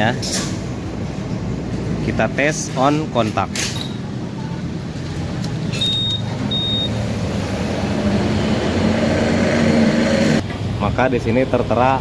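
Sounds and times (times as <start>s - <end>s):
short high electronic beeps: 5.7s - 7.0s.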